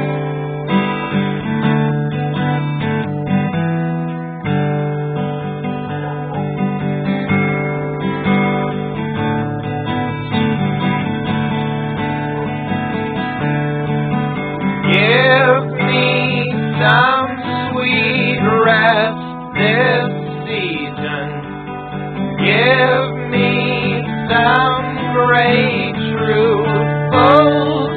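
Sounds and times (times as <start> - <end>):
strummed acoustic guitar: 0.0 - 27.9
person singing: 14.8 - 21.5, 22.4 - 27.9.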